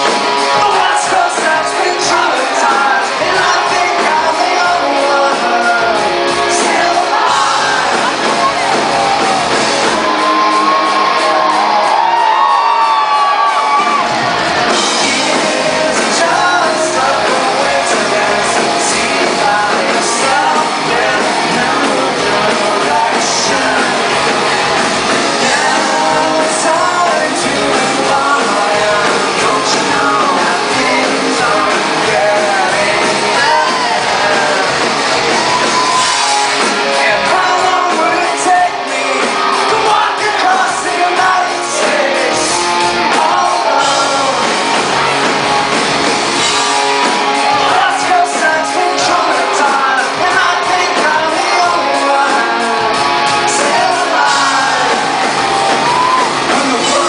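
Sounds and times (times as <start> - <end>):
lead singer singing: 0.0 - 57.0
rock band playing live: 0.0 - 57.0
shouting: 6.5 - 14.8, 53.4 - 57.0.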